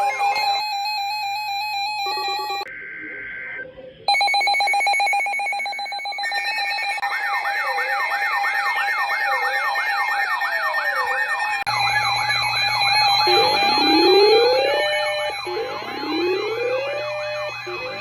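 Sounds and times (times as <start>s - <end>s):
siren sweeping up and down: 0.0s - 18.0s
rapidly pulsing alert tone: 4.1s - 18.0s.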